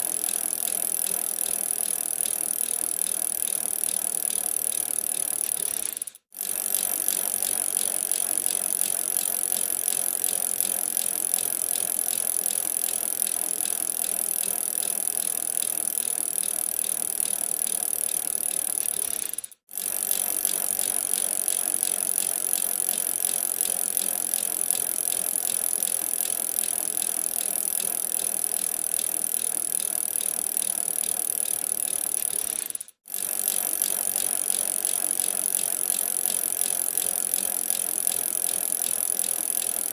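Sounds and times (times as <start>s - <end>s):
bicycle drivetrain whirring: 0.0s - 39.9s.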